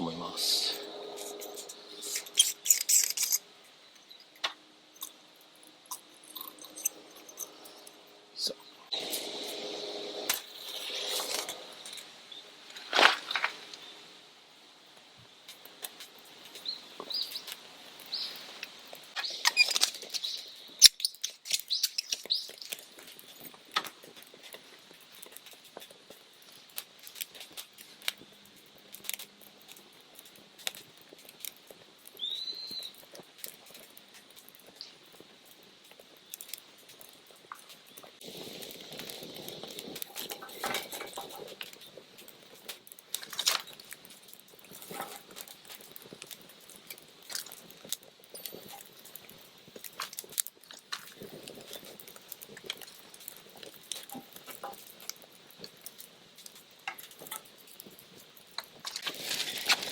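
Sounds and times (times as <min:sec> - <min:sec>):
bird chirping: 0:00.0 - 0:05.3, 0:16.5 - 0:18.6, 0:19.2 - 0:22.9, 0:32.1 - 0:33.0
campfire crackling and popping: 0:00.0 - 0:59.9.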